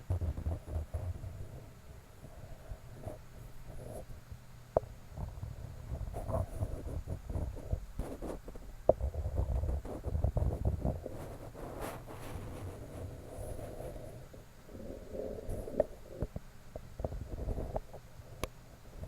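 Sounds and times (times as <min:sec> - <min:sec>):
objects rubbing against microphone: 0:05.9 - 0:14.2.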